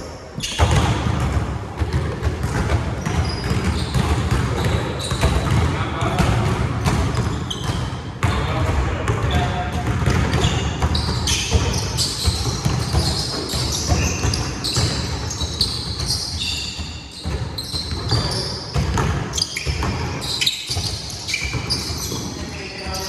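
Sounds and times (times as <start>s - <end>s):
sneaker squeaks on floor: 0.0s - 1.4s, 2.0s - 8.6s, 9.3s - 23.0s
players' voices: 0.0s - 14.2s, 21.0s - 23.0s
basketball bouncing: 0.4s - 23.0s.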